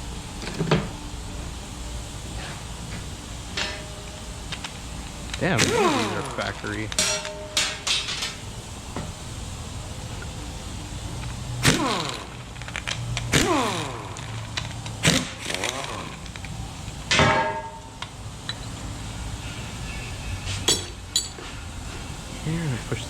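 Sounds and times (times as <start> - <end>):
metallic knocks with ringing: 6.9 - 8.4, 17.1 - 18.8.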